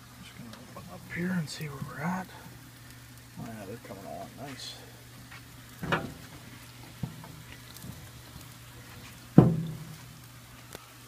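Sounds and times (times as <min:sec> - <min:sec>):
wings crackling on grill: 0:00.0 - 0:11.0
sharp knocks: 0:09.4 - 0:09.9.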